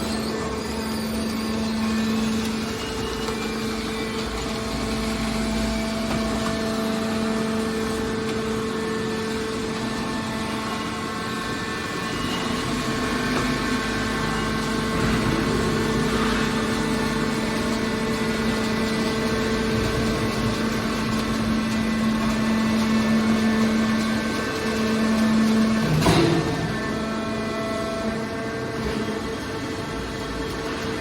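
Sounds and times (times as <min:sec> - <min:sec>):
hydraulic baler machine hum: 0:00.0 - 0:31.0.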